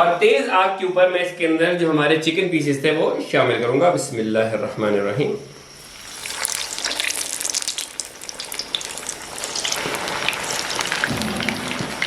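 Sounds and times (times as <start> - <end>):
chicken deep-frying in oil: 5.8 - 12.0.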